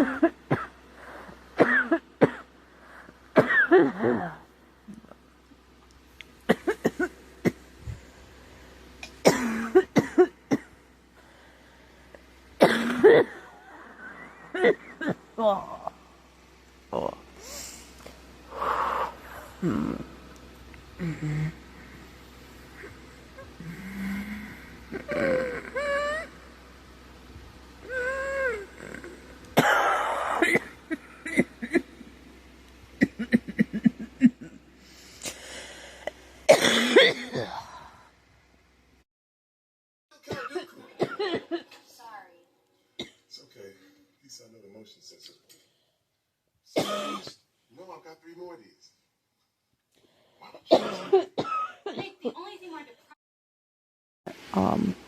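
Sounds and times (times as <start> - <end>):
girl coughing: 1.6 - 2.5, 3.4 - 4.4, 9.2 - 10.7, 12.6 - 13.4, 14.5 - 15.2, 29.6 - 31.8, 36.5 - 37.7, 40.2 - 41.8, 46.8 - 47.4, 50.5 - 52.5.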